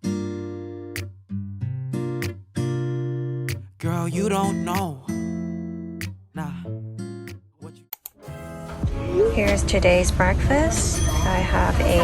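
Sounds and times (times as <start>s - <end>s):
acoustic guitar strumming: 0.0s - 12.0s.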